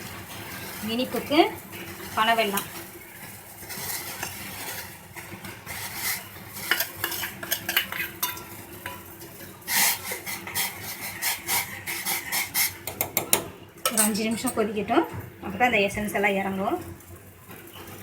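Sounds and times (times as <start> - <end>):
spoon scraping and clinking a pot: 0.4 - 14.7.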